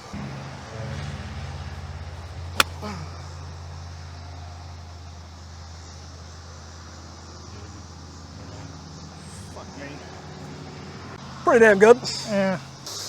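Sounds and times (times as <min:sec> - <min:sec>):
golf club striking ball: 0:02.6 - 0:03.0.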